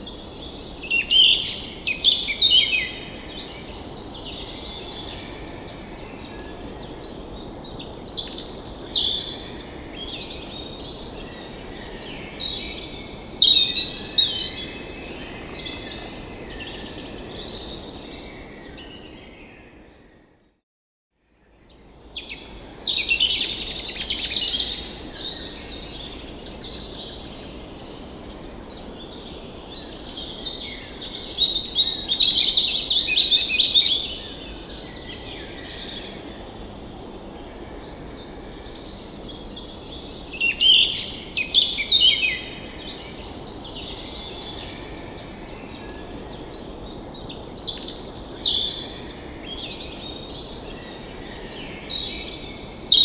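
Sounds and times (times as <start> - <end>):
birds singing and chirping: 22.0 - 53.0.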